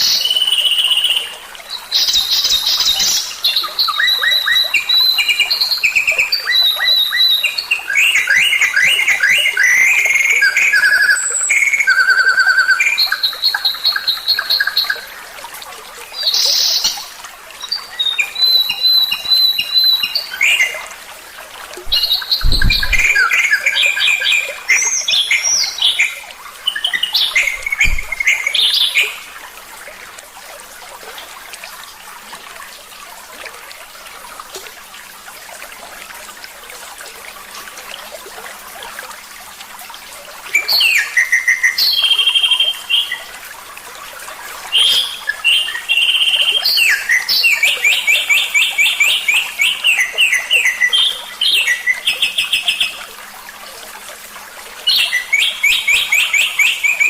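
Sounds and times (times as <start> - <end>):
songbird song: 0.0 - 30.3, 40.4 - 57.0
low thump: 21.9 - 23.2, 27.6 - 28.2.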